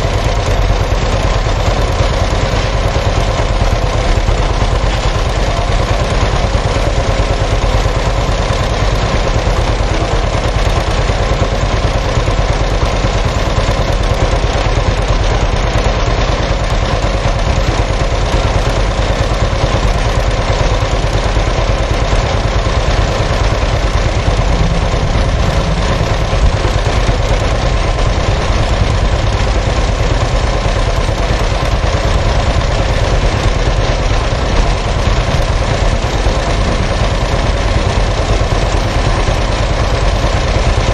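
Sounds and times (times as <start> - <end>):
machinery humming: 17.9 - 40.7.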